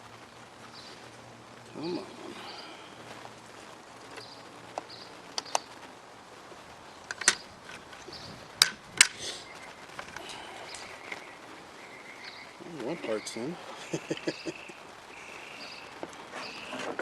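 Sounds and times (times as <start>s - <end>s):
rifle parts clicking together: 7.1s - 7.8s.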